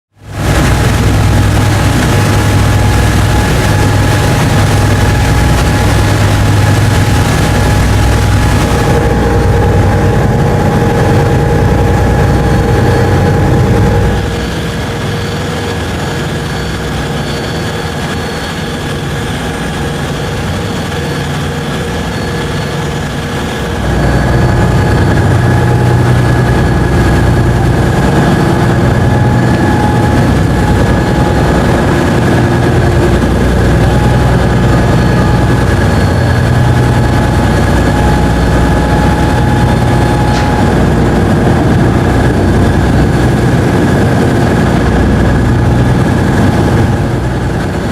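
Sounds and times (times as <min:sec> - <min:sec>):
ship engines droning: 0:00.1 - 0:47.9.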